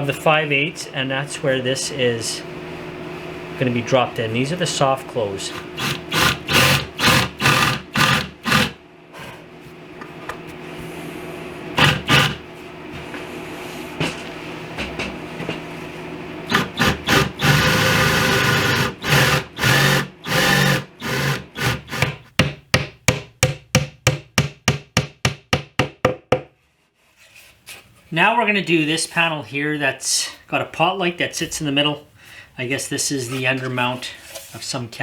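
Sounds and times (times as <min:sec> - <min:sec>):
hammer tapping on wood: 0:22.0 - 0:26.5.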